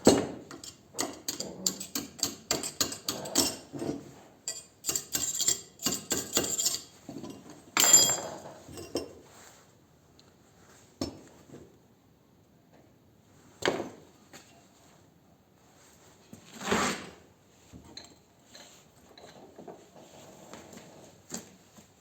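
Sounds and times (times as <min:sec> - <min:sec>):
metallic clinks and knocks: 0:00.1 - 0:09.1.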